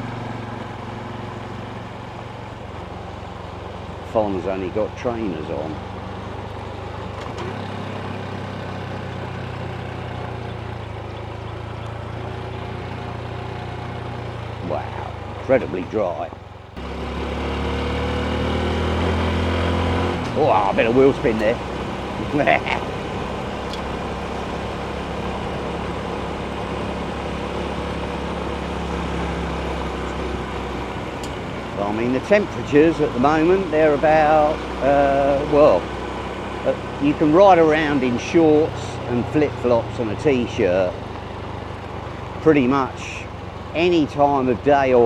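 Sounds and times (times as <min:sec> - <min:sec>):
motorcycle engine running: 0:00.0 - 0:45.0
wind and road noise: 0:00.0 - 0:45.0.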